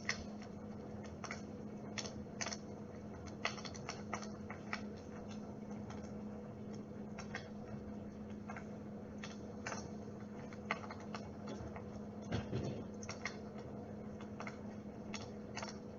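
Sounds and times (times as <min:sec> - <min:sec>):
faint clicks and ticks: 0:00.0 - 0:15.9
low electrical hum: 0:00.0 - 0:15.9.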